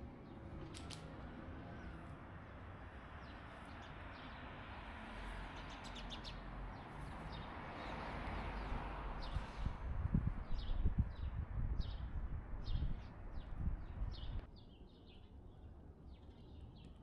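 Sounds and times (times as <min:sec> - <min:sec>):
steady outdoor hum: 0:00.0 - 0:17.0
small birds chirping: 0:05.4 - 0:09.7, 0:10.4 - 0:17.0.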